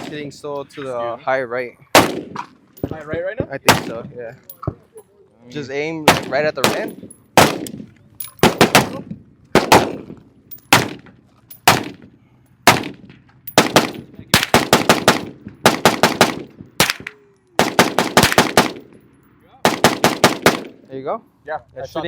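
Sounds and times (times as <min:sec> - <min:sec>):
gunshots: 0:01.9 - 0:02.6, 0:03.6 - 0:04.1, 0:06.0 - 0:19.0, 0:19.6 - 0:20.8
rapid gunfire: 0:06.1 - 0:07.7, 0:08.4 - 0:09.0, 0:09.6 - 0:10.0, 0:12.7 - 0:13.0, 0:13.6 - 0:18.9, 0:19.6 - 0:20.8.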